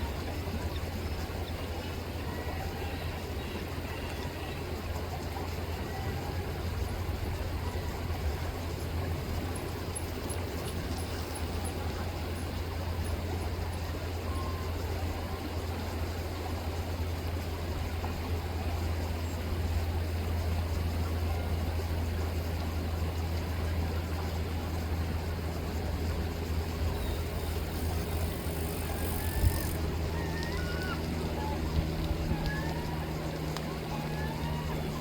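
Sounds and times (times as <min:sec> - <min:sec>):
low motor hum: 0:00.0 - 0:35.0
rippling river water: 0:00.0 - 0:35.0
faint gull calls: 0:28.9 - 0:35.0.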